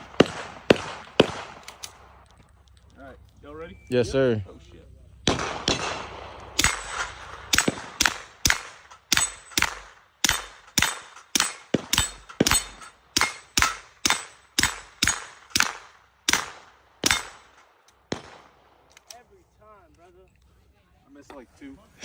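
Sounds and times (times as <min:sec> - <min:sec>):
pistol gunshots: 0:00.0 - 0:02.2, 0:05.2 - 0:18.7
metallic ring of steel targets: 0:06.6 - 0:15.8, 0:17.0 - 0:17.7.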